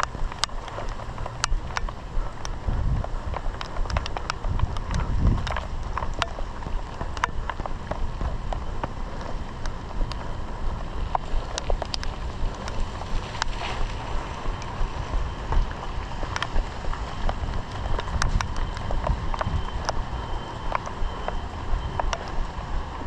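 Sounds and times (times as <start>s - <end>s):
running footsteps: 0.0s - 23.0s
sharp ticks: 0.0s - 23.0s
wind buffeting microphone: 0.0s - 23.0s.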